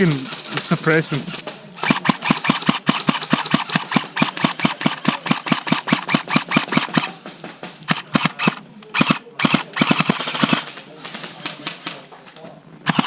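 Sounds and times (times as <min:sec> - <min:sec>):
airsoft gun firing: 0:01.3 - 0:10.9.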